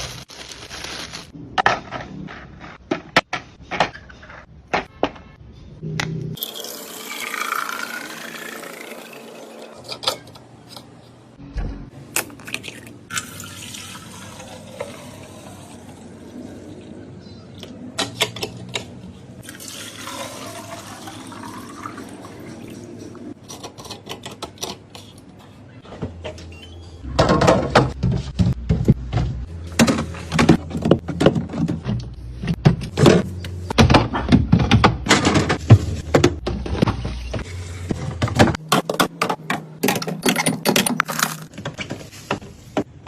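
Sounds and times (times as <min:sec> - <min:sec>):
liquid pouring into containers: 0:12.6 - 0:15.7, 0:19.4 - 0:23.2.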